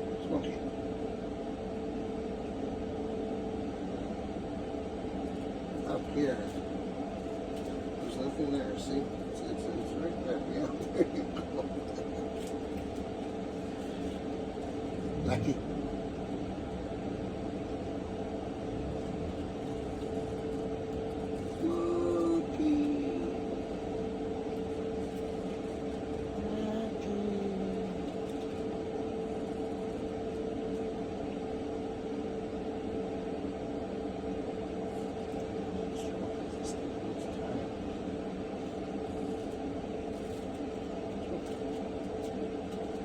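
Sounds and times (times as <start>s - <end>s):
steady machine hum: 0.0s - 43.0s.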